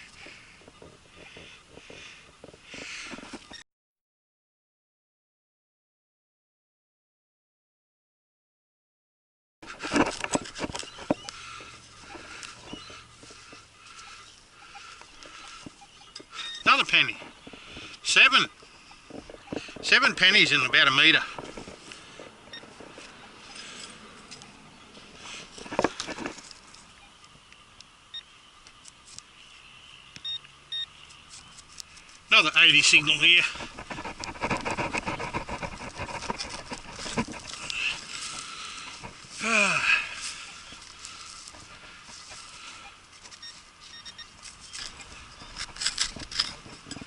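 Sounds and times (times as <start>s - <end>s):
clicks of dirt and stones: 0.0s - 3.6s, 9.6s - 28.0s, 28.6s - 29.3s, 30.1s - 47.0s
knocks and scrapes: 9.7s - 13.6s, 19.1s - 24.4s, 25.0s - 26.7s, 32.7s - 39.4s, 44.4s - 47.0s
metal detector beep: 15.7s - 16.9s, 23.4s - 23.6s, 30.2s - 30.9s, 42.2s - 47.0s.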